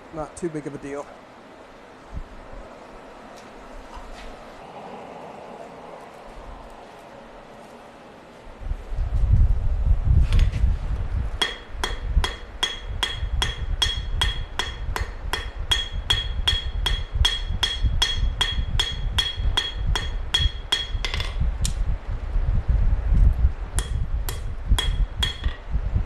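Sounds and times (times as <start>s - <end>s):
hammer tapping steel on anvil: 11.4s - 21.4s, 23.8s - 25.6s.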